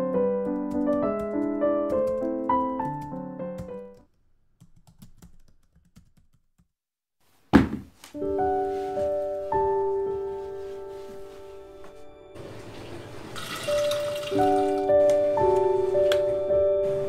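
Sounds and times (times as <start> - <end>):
gentle solo piano music: 0.0 - 4.0, 8.2 - 17.0.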